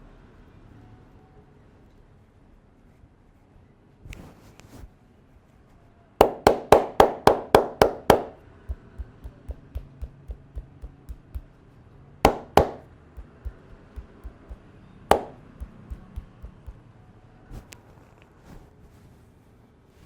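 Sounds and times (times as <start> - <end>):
hands striking body percussively: 6.2 - 11.5, 12.3 - 16.8.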